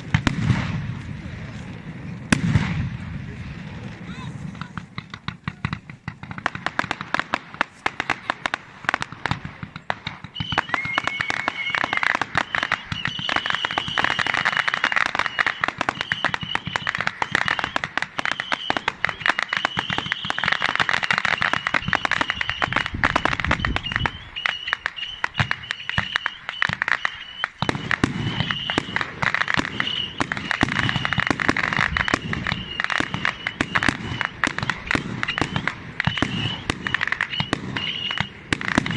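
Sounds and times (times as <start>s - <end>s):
fireworks bangs: 0.0s - 38.9s
fireworks crackling: 0.0s - 38.9s
high steady whistle: 10.3s - 38.9s.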